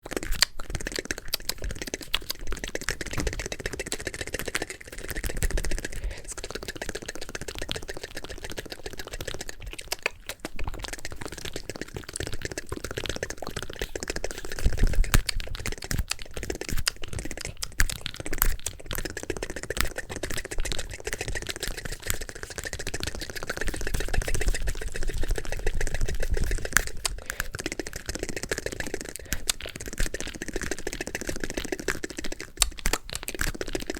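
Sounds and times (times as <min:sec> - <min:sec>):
wet mouth clicks and pops: 0:00.0 - 0:33.9.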